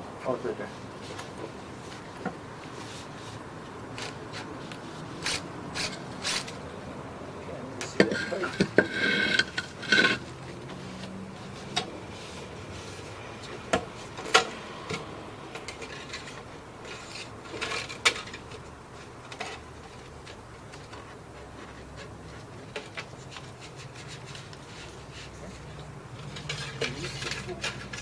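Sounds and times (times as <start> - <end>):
plastic scraping rub: 7.8 - 15.1, 15.7 - 28.0.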